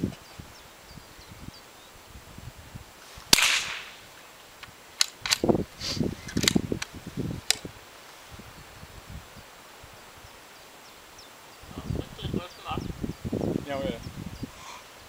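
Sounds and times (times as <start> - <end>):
rifle shot: 3.3 - 4.0
sharp clicks: 4.6 - 5.5, 6.3 - 7.7.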